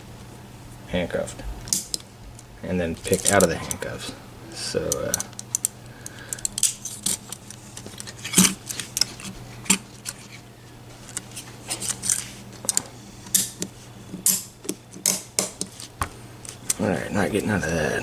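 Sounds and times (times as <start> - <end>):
low steady hum: 0.0 - 18.0
handcuffs ratcheting: 3.0 - 3.8, 4.8 - 10.2, 15.1 - 16.8.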